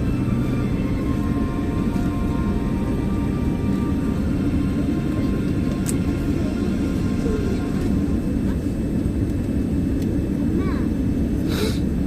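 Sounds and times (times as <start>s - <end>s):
faint music tones: 0.0s - 8.7s
airliner cabin rumble: 0.0s - 12.0s.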